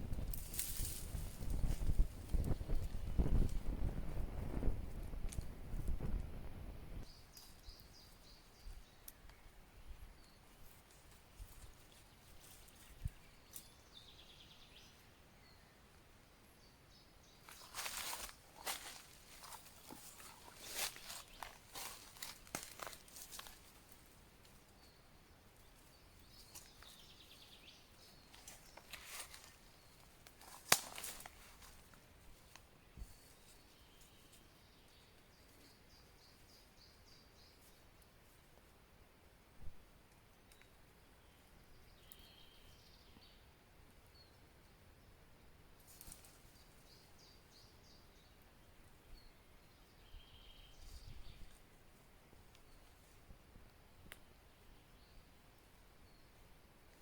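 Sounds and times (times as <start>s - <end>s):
quiet hiss: 0.0s - 57.0s
sharp snap: 30.6s - 31.1s.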